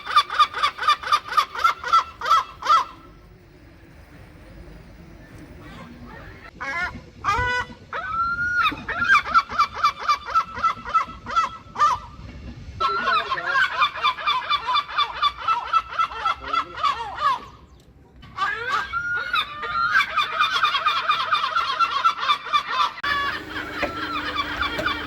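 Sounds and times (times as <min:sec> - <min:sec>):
gulls calling: 0:00.0 - 0:12.2, 0:18.3 - 0:25.0.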